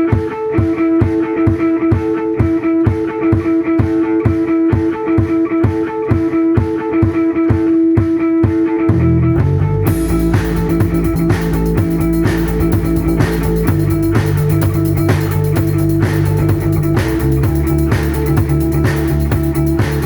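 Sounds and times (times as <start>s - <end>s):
drum beat: 0.0s - 20.0s
rock band playing: 9.9s - 20.0s.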